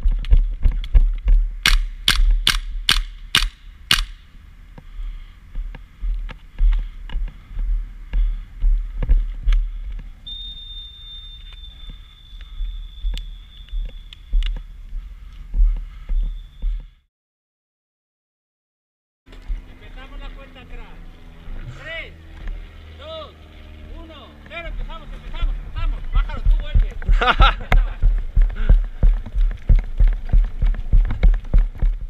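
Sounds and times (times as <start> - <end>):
airsoft gun shots: 1.6 - 4.2.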